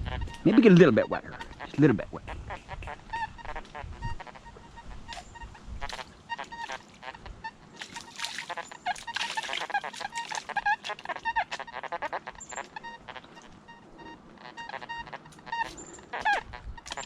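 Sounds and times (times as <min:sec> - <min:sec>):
metal detector beeping: 0:12.4 - 0:17.0.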